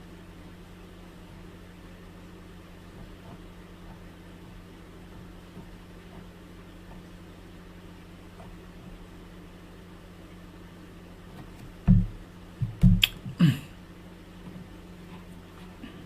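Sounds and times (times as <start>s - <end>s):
low electrical hum: 0.0s - 16.0s
loud thumps and clicks: 11.6s - 13.4s.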